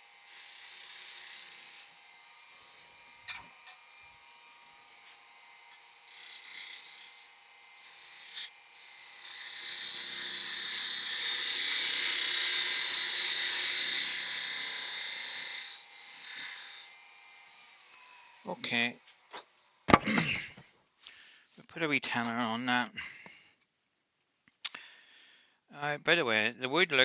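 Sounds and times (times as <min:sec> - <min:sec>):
wood lathe running: 0:00.0 - 0:19.2
turning tool cutting wood: 0:00.0 - 0:20.7.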